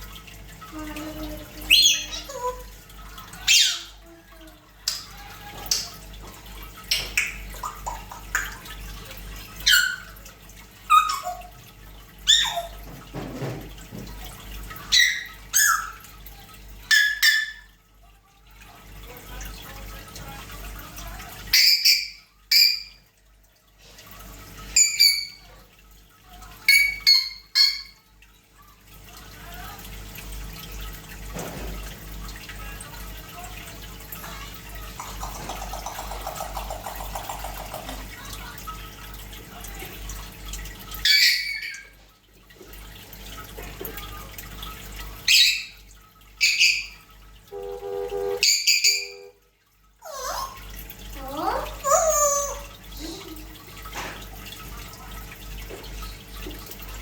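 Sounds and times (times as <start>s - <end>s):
parrot whistles and squawks: 1.6s - 2.7s, 3.4s - 4.0s, 9.6s - 10.2s, 10.9s - 11.5s, 12.2s - 12.8s, 14.8s - 16.0s, 16.9s - 17.7s, 21.5s - 23.0s, 24.8s - 25.5s, 26.7s - 28.0s, 41.0s - 42.0s, 45.3s - 45.8s, 46.4s - 47.0s, 48.4s - 49.4s.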